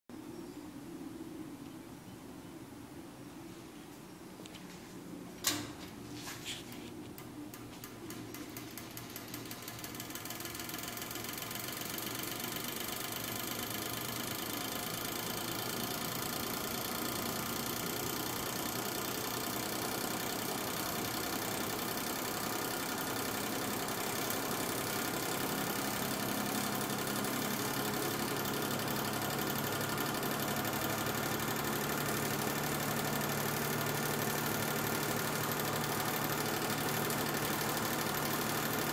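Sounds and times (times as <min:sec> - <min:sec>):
fan motor humming: 0:04.4 - 0:38.9
fan switch click: 0:05.4 - 0:05.8.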